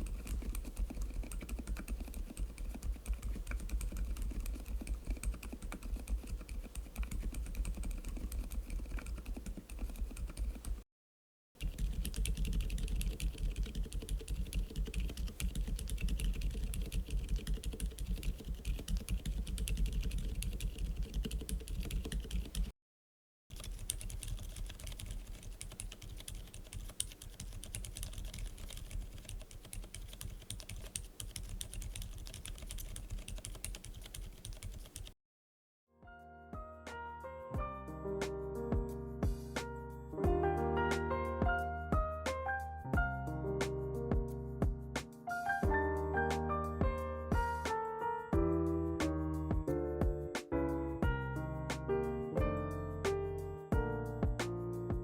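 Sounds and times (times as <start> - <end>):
typing on mechanical keyboard: 0.0 - 10.8, 11.6 - 22.7, 23.5 - 35.2.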